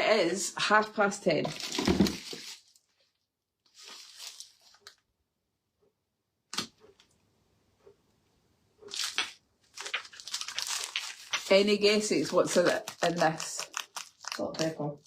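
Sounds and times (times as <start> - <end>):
packaging rustling and tearing: 3.7 - 5.0, 8.9 - 15.0.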